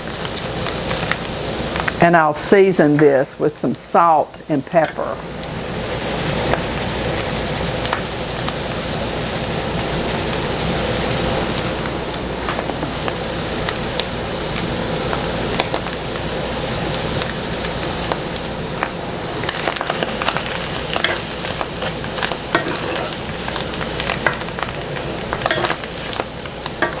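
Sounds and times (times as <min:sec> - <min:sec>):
vegetables sizzling in a skillet: 0:00.0 - 0:27.0
utensil scraping a pan: 0:21.0 - 0:23.3.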